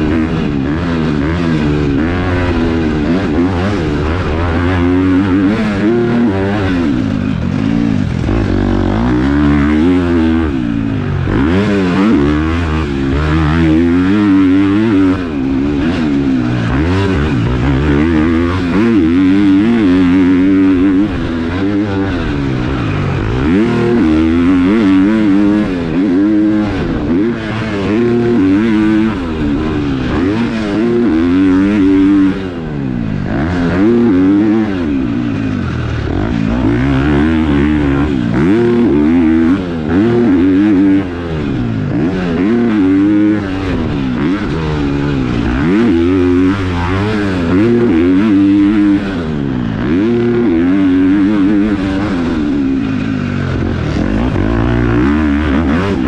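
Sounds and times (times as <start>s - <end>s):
motocross bike engine revving: 0.0s - 56.0s.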